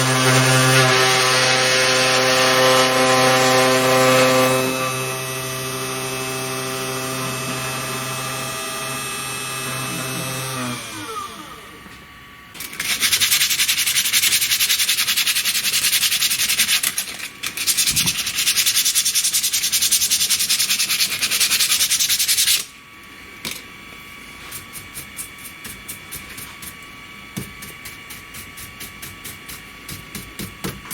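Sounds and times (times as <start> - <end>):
router spindle motor humming: 0.0 - 12.0
loud rough rubbing noise: 12.8 - 22.7.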